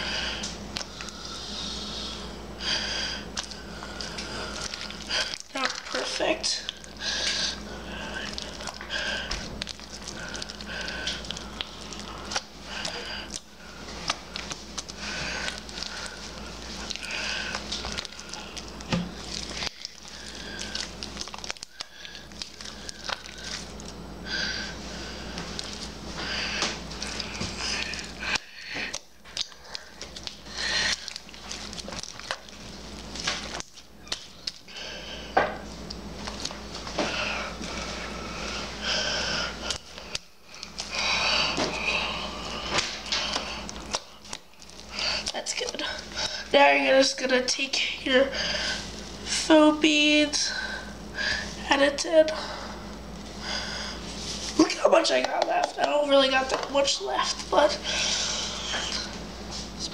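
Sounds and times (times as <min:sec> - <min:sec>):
slime crackling and popping: 0:03.3 - 0:24.0, 0:25.5 - 0:34.7, 0:41.8 - 0:46.2.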